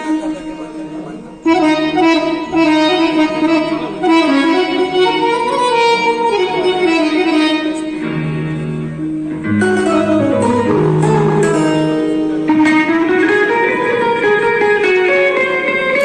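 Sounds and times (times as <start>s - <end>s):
instrumental music: 0.0s - 16.0s.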